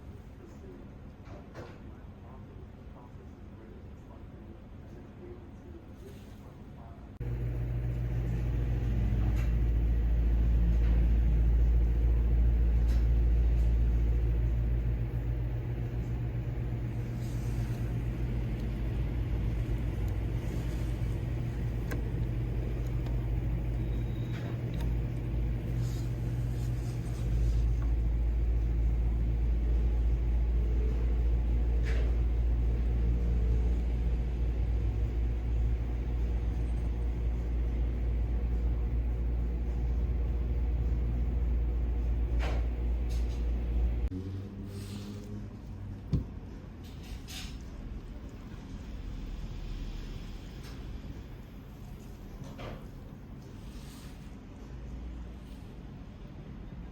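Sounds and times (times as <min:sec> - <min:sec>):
fan air rumble on microphone: 0:04.8 - 0:56.9
electric fan motor humming: 0:07.2 - 0:44.2.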